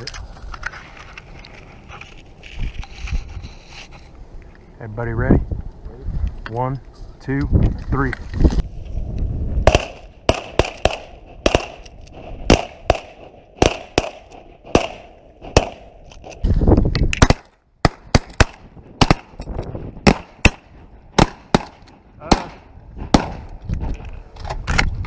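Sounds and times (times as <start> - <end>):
shotgun shots: 9.6 - 16.0, 17.2 - 19.4, 20.0 - 23.5.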